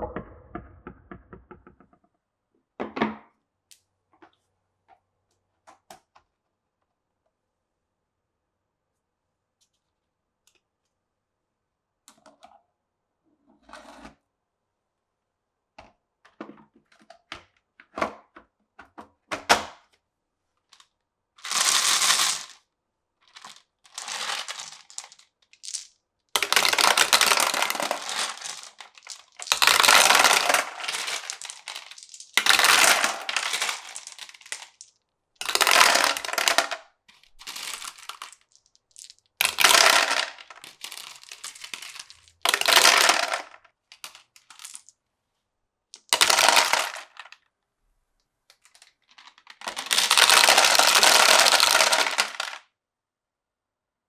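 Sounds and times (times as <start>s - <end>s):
marbles rolling along tracks: 21.4s - 22.6s, 23.3s - 44.9s, 46.0s - 47.4s, 48.7s - 52.7s
marbles clicking on wooden blocks: 21.5s - 22.6s, 23.3s - 44.9s, 46.0s - 47.4s, 48.5s - 52.6s.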